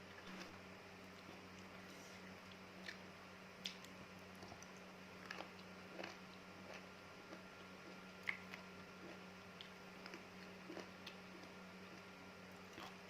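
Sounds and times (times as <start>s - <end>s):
chewing fruit: 0.0s - 13.0s
faint steady hum: 0.0s - 13.0s
wet mouth clicks and smacks: 8.2s - 8.6s.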